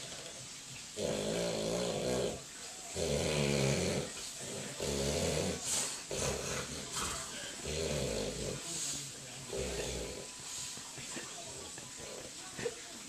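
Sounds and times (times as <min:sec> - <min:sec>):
man snoring loudly: 0:01.0 - 0:06.9, 0:07.6 - 0:08.7, 0:09.5 - 0:10.4.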